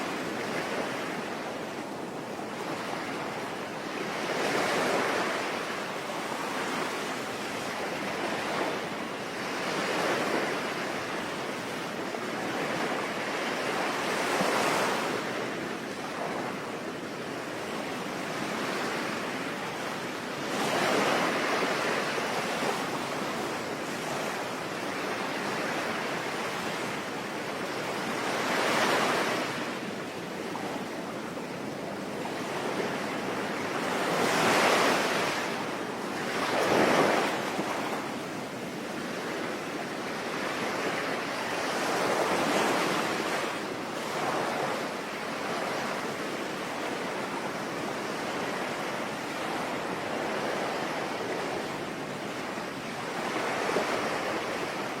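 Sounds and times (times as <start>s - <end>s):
ocean waves breaking: 0.0s - 55.0s.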